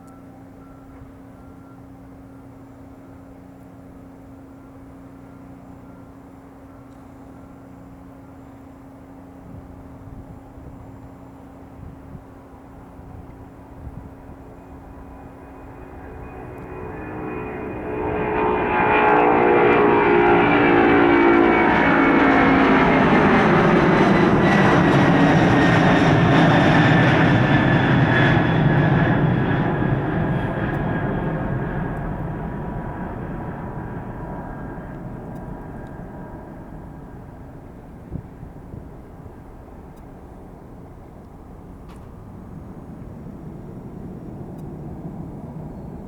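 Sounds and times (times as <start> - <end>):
jet engines passing: 11.7 - 46.0.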